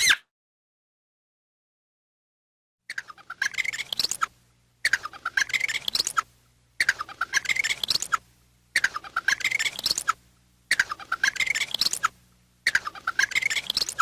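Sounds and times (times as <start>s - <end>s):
squirrel chattering: 2.9s - 8.2s, 8.8s - 14.0s.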